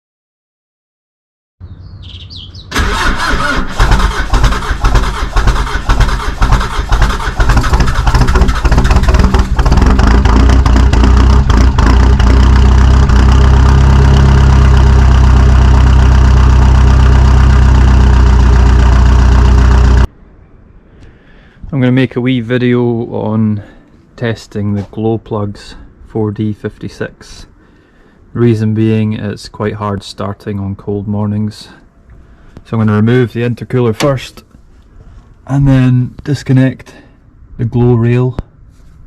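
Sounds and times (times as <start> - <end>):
diesel engine starting and idling: 2.6 - 20.1.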